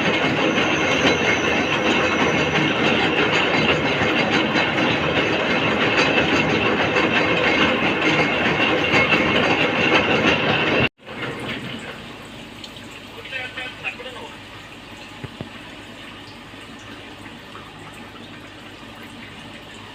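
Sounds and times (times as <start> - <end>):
metalworking machine clattering: 0.0 - 12.1.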